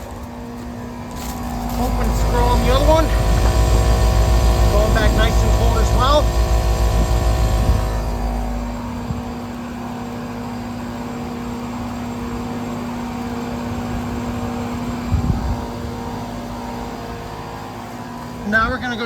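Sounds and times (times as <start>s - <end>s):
air conditioner fan drone: 0.0s - 19.0s
compressor steady tone: 0.0s - 19.0s
low bump: 1.4s - 9.4s.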